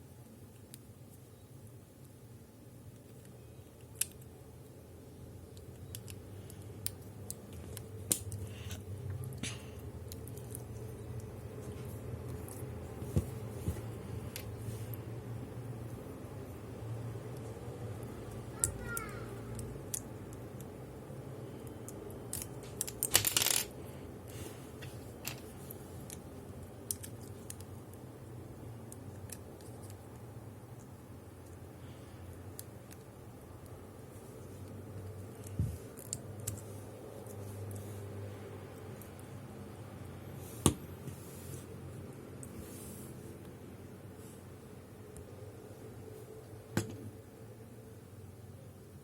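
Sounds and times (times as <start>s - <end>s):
low steady hum: 0.0s - 49.0s
plastic toy parts clicking: 3.0s - 4.3s, 5.4s - 11.3s, 18.3s - 20.8s, 21.6s - 23.7s, 26.8s - 28.0s
plastic toy pieces clicking: 18.6s - 20.8s, 21.6s - 23.7s
toy clattering rattle: 22.3s - 23.7s.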